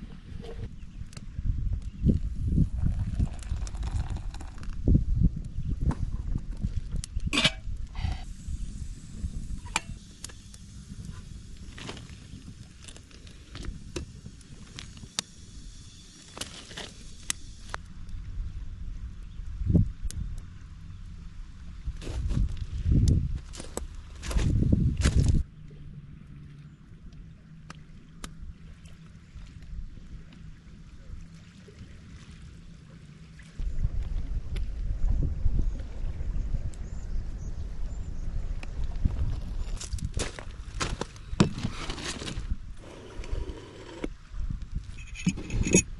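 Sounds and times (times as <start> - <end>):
wind buffeting microphone: 0.0 - 12.8, 21.4 - 25.5, 33.6 - 45.9
low outdoor hum: 35.8 - 45.9.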